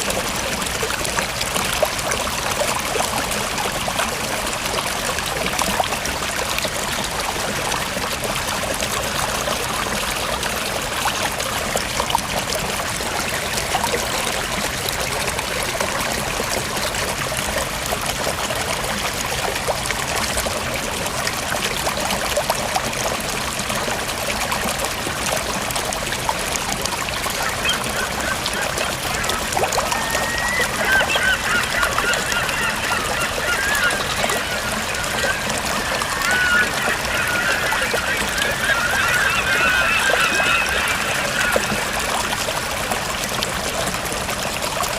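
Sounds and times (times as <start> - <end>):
stream and waterfall running: 0.0 - 44.9
faint high wavering calls: 27.4 - 42.1.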